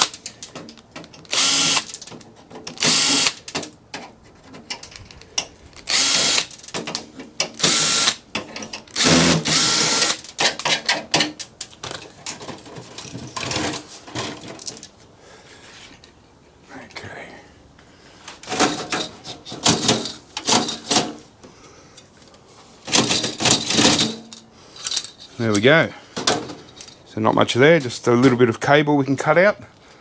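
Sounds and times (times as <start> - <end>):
metal parts clicking and knocking: 0.0 - 14.9, 18.5 - 21.2, 22.9 - 27.0
cordless drill whining: 1.2 - 2.0, 2.8 - 3.5, 5.9 - 6.5, 7.6 - 8.2, 8.9 - 10.2.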